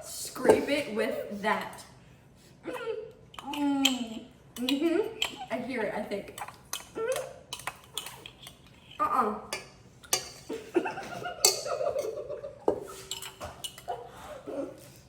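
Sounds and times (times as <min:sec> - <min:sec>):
spoon scraping a bowl: 0:03.3 - 0:05.6, 0:06.2 - 0:10.6, 0:11.4 - 0:14.0
people laughing: 0:10.5 - 0:12.7.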